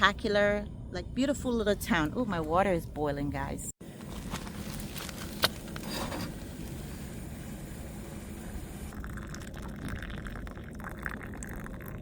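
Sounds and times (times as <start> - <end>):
water pouring into a cup: 8.8 - 12.0.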